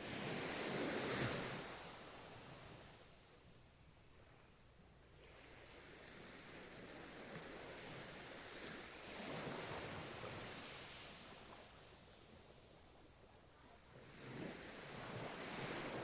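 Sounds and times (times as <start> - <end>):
ocean wave washing: 14.0 - 16.0.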